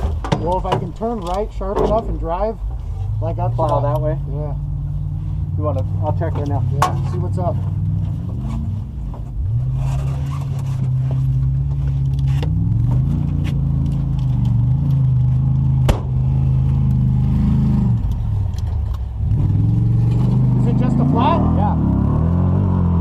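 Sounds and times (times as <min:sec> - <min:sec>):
truck engine revving: 0:03.0 - 0:23.0
sharp knock: 0:15.9 - 0:16.2.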